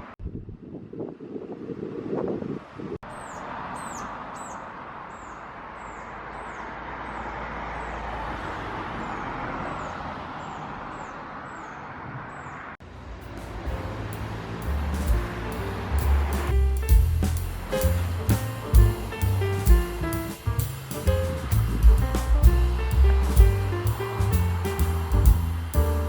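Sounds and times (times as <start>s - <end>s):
steady rushing noise: 12.8s - 26.0s.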